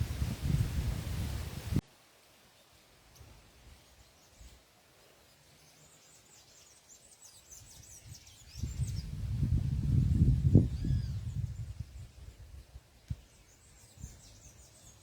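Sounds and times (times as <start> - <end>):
wind buffeting microphone: 0.0 - 1.8, 7.7 - 12.9
small birds chirping: 2.5 - 9.5, 10.4 - 15.0.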